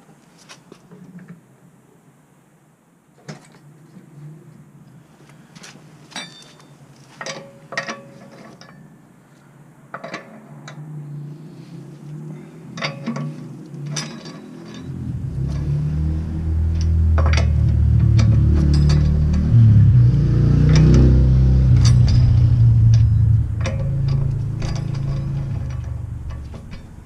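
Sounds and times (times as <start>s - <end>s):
metal clinks and knocks: 6.1s - 8.9s, 12.7s - 15.8s, 16.6s - 19.6s, 20.6s - 27.0s
low rumble: 14.8s - 27.0s.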